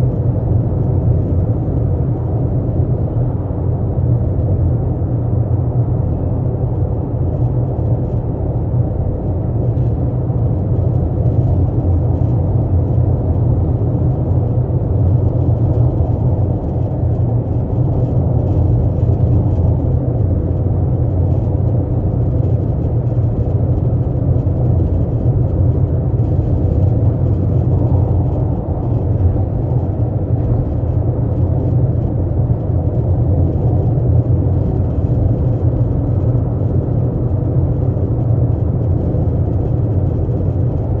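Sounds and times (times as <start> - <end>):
car low rumble: 0.0 - 41.0
faint constant hum: 0.0 - 41.0.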